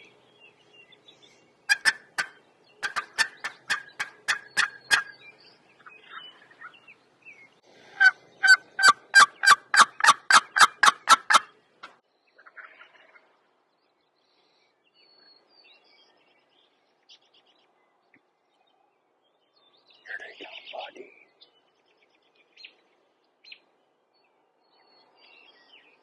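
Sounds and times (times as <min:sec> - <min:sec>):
turkey yelps: 0:01.7 - 0:05.2, 0:08.0 - 0:11.5.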